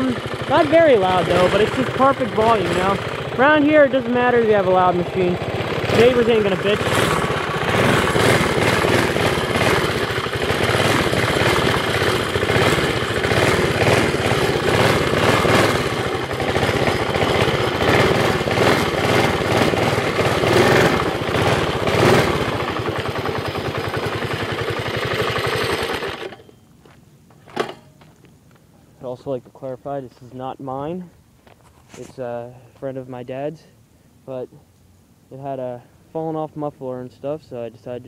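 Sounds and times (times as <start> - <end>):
small engine running: 0.0 - 26.6.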